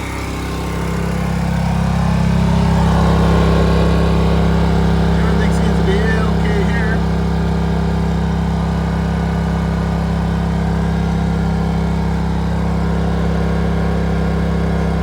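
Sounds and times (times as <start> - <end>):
air conditioner humming: 5.2 - 7.2.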